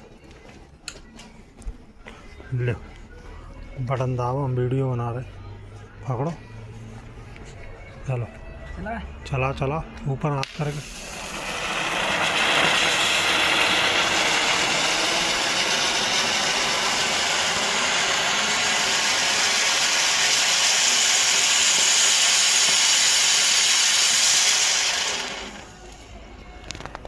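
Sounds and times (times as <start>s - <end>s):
pyro gun hissing: 10.8s - 25.7s.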